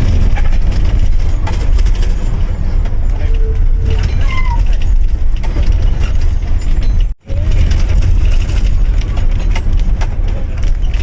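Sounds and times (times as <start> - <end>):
bus engine rumbling: 0.0 - 11.0
cabin fittings rattling: 3.8 - 7.2.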